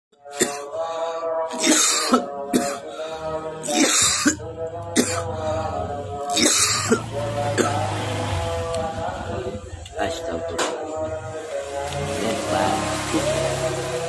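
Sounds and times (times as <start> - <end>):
background music with held tone: 0.1 - 14.0
person coughing: 0.3 - 0.7, 1.5 - 2.9, 3.6 - 4.4, 5.0 - 5.3, 6.4 - 7.8.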